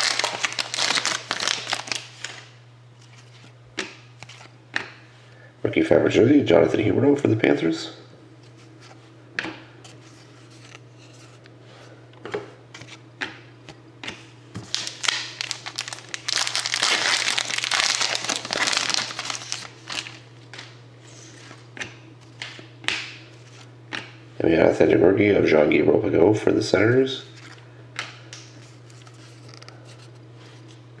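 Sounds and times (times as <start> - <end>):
plastic wrapping crinkling: 0.0 - 3.2, 14.6 - 20.2
steady low hum: 0.0 - 31.0.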